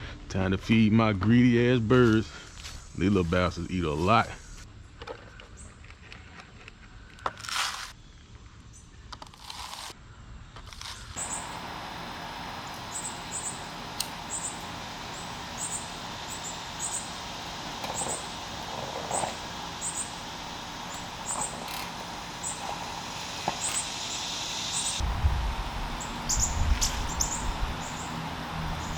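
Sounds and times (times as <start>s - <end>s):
small birds chirping: 11.2s - 25.0s, 25.9s - 28.9s
steady background hiss: 11.2s - 28.9s
low rumble: 25.0s - 28.9s.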